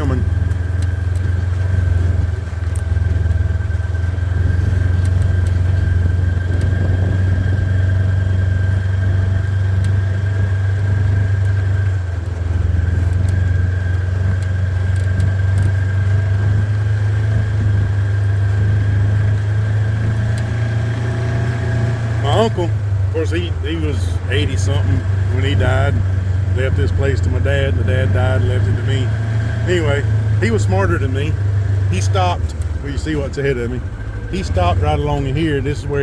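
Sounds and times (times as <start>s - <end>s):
atv engine running: 0.0s - 36.0s.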